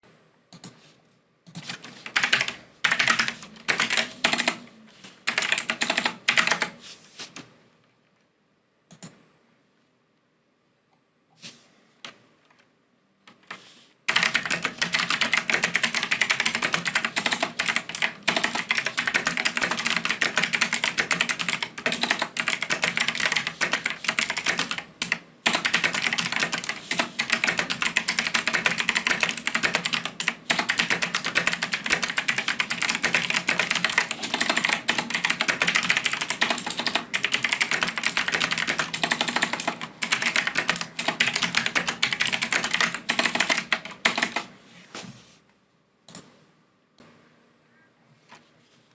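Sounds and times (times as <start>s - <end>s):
mechanical keyboard typing: 1.5s - 4.7s, 5.3s - 6.8s, 14.1s - 44.5s.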